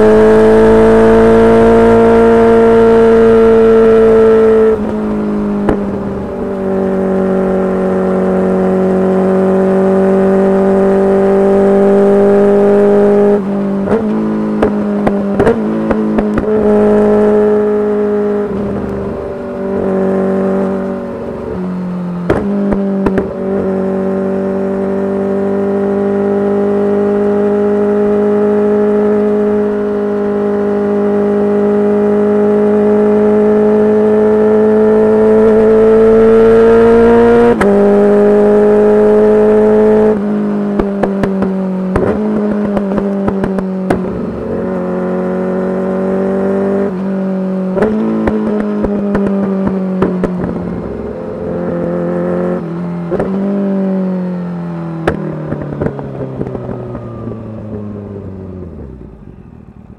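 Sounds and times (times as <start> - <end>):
motorcycle engine: 0.0 - 59.9
sharp exhaust pops: 40.8 - 44.2.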